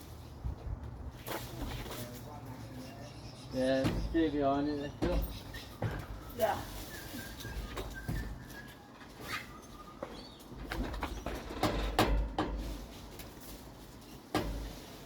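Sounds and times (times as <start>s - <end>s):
bird calling: 2.6s - 11.3s.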